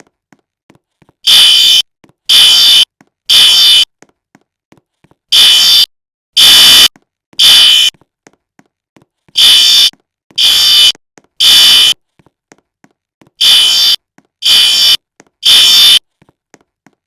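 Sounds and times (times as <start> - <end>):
fire alarm blasts: 1.3 - 3.9, 5.3 - 7.9, 9.4 - 12.0, 13.4 - 16.0.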